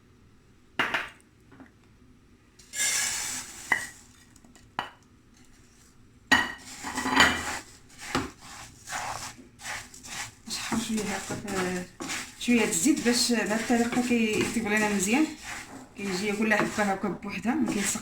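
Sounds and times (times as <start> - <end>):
oil hissing in pan: 2.6 - 4.4, 6.5 - 16.9
scraping in pan: 2.6 - 4.6, 5.3 - 18.0.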